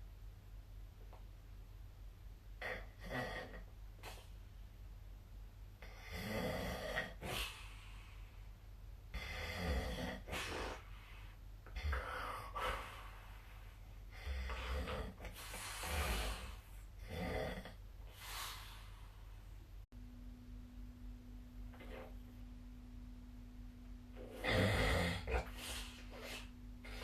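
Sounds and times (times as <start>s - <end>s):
steady low hum: 0.0s - 27.0s
person snoring: 5.8s - 7.6s, 9.2s - 10.9s, 14.1s - 18.9s, 24.2s - 27.0s.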